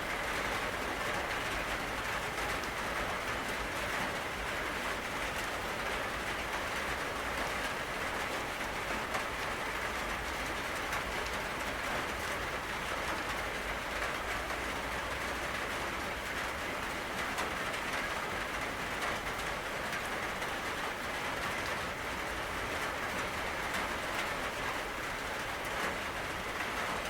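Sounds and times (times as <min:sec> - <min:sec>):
steady rainfall: 0:00.0 - 0:27.0.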